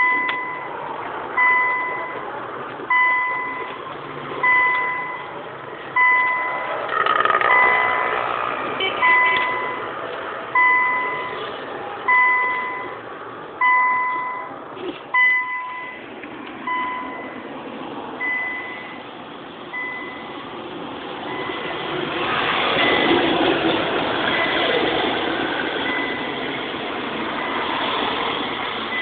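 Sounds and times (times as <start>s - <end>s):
car warning beeps: 0.0s - 8.0s, 8.8s - 9.9s, 10.5s - 13.0s, 13.6s - 17.5s, 18.2s - 19.1s, 19.7s - 20.6s, 21.2s - 21.9s, 25.8s - 26.4s, 27.3s - 29.0s.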